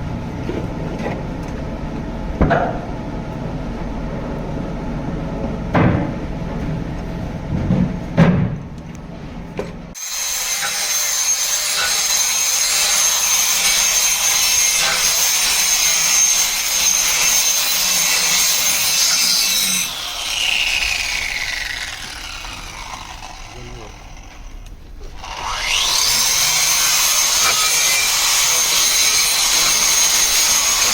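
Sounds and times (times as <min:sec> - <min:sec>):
electric grinder grinding: 0:10.0 - 0:30.9.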